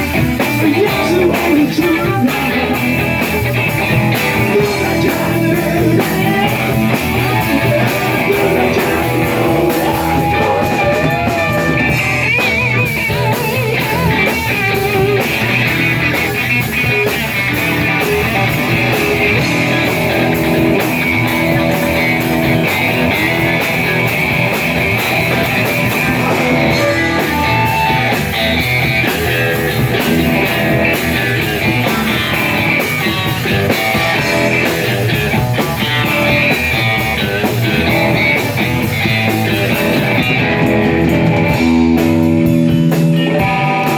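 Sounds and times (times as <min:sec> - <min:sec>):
rock band playing: 0:00.0 - 0:43.9.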